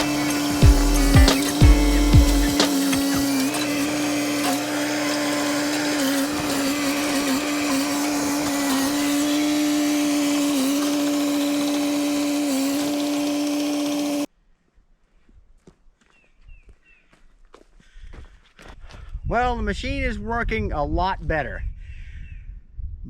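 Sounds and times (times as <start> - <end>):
excavator engine and hydraulics whining: 0.0 - 14.3.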